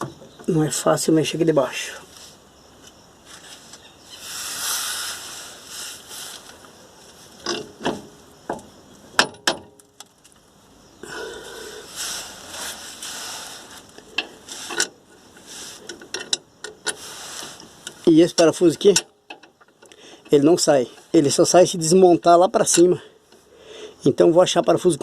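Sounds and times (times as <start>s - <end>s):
rustling and scraping: 1.9s - 8.8s, 9.8s - 22.0s
metal tools clicking and clinking: 14.0s - 15.0s, 15.8s - 17.0s, 22.6s - 23.0s.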